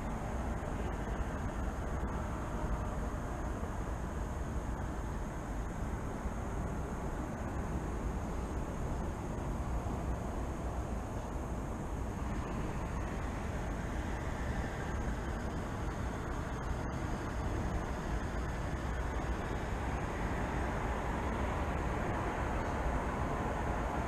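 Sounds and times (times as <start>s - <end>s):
road traffic rumble: 0.0s - 24.0s.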